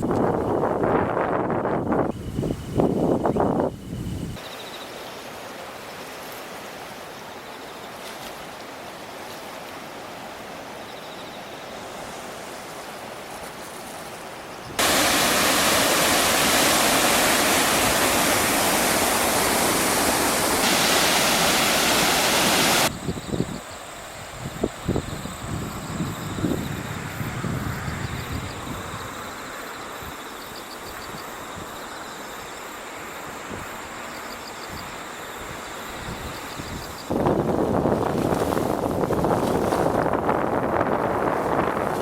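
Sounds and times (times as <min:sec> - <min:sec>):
wind buffeting microphone: 0:00.0 - 0:04.4, 0:24.2 - 0:29.2, 0:36.0 - 0:42.0
river rushing: 0:04.9 - 0:22.9.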